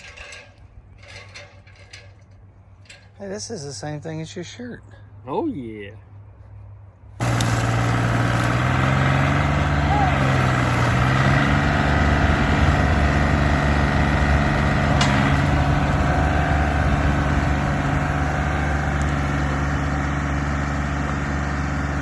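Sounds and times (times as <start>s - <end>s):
engine idling: 7.2s - 22.0s.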